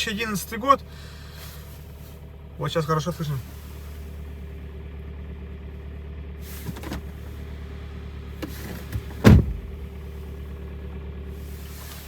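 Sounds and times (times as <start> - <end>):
car engine idling with knock: 3.5 - 12.0
loud thump: 9.0 - 9.8.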